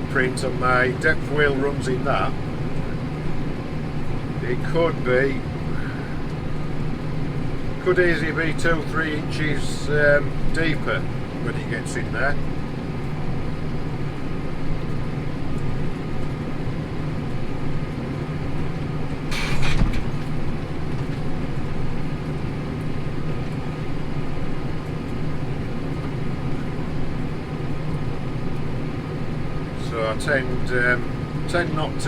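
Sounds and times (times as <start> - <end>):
tractor engine under load: 17.4 - 23.8
brief clatter: 19.3 - 21.3.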